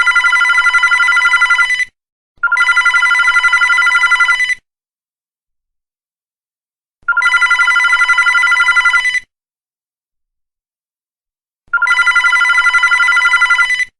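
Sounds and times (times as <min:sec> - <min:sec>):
landline telephone ringing: 0:00.0 - 0:01.8, 0:02.4 - 0:04.6, 0:07.1 - 0:09.2, 0:11.8 - 0:13.9.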